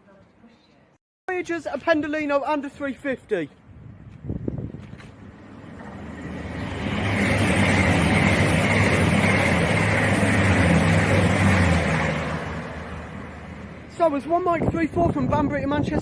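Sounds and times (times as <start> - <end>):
rush of wheels and air: 3.8 - 13.9
diesel engines running: 5.1 - 15.0.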